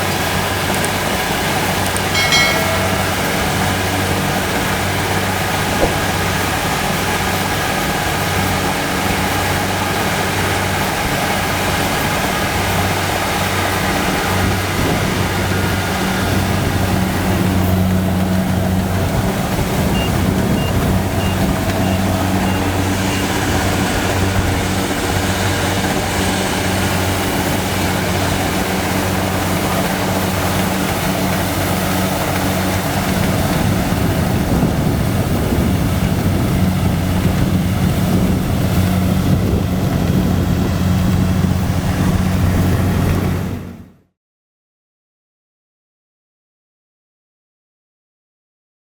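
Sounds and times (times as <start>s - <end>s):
diesel engine humming: 0.0s - 44.0s.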